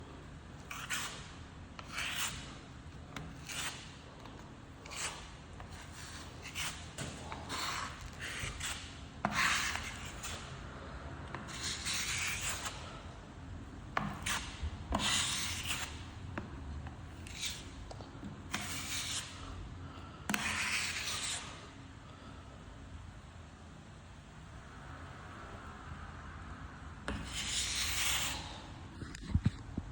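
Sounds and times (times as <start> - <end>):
hand sanding strokes: 0.6 - 10.6, 11.5 - 12.9, 14.1 - 16.0, 27.1 - 28.6.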